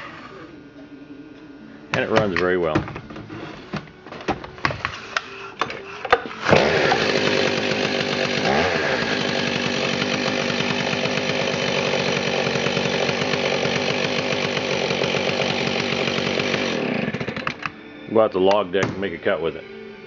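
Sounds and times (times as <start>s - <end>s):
chainsaw engine running: 6.4s - 17.7s.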